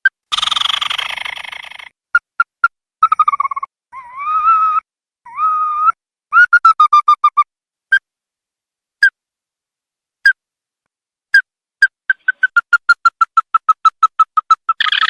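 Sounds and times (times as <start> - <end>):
bird calling with rattling trills: 0.3 - 3.6, 11.8 - 15.0.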